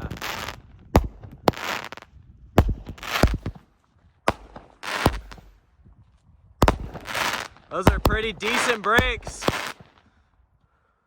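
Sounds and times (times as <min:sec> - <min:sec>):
firework crackling break: 0:00.0 - 0:00.6, 0:06.6 - 0:10.0
firework launch reports: 0:00.0 - 0:02.0, 0:06.6 - 0:10.0.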